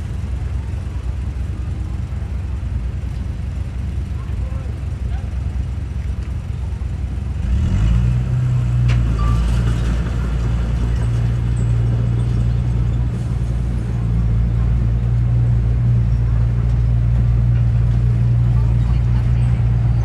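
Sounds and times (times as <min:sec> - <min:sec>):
heavy diesel engine droning: 0:00.0 - 0:20.0.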